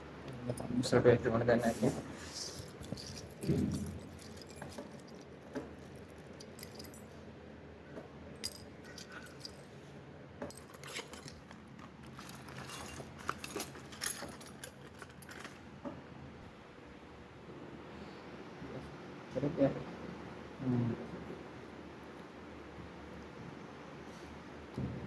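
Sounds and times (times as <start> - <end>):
keys clicking and jingling: 2.4 - 7.2, 8.4 - 9.8, 10.4 - 15.6.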